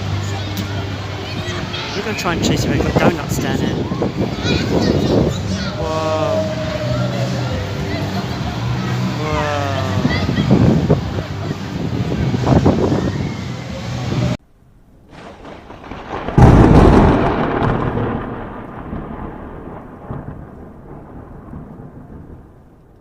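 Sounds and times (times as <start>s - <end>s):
fireworks rumbling and crackling: 0.0s - 23.0s
firework shell booming: 14.6s - 22.8s.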